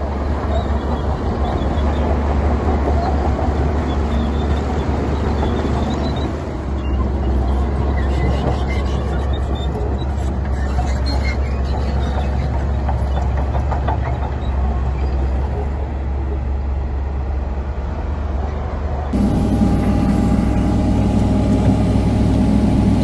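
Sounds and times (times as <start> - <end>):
heavy diesel machinery rumbling: 0.0 - 23.0
faint high squeaks: 4.0 - 13.4.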